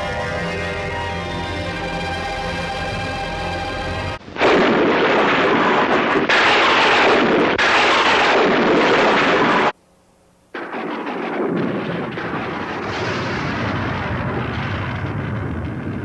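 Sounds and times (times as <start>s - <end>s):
music: 0.0s - 4.2s
thunderclap with rolling rumble: 10.6s - 16.0s.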